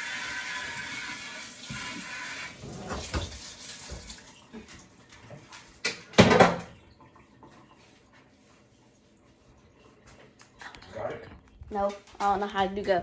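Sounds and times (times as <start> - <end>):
tap running into sink: 0.7 - 4.2, 5.3 - 6.8.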